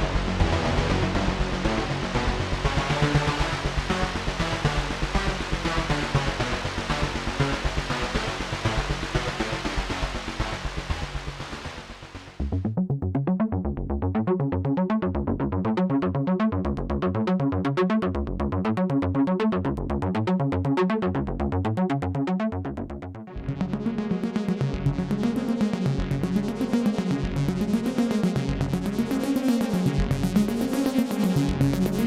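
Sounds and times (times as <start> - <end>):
synthesizer arpeggio: 12.4 - 32.0.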